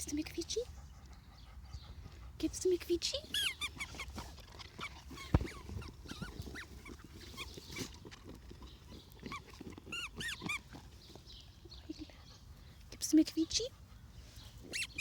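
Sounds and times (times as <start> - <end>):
squeaky dog toy squeaking: 3.2 - 7.6, 9.9 - 10.6, 14.7 - 15.0.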